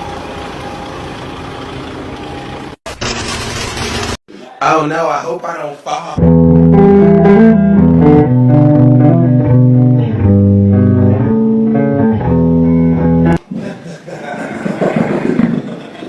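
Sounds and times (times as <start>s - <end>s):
guitar and bass music: 6.2s - 13.4s.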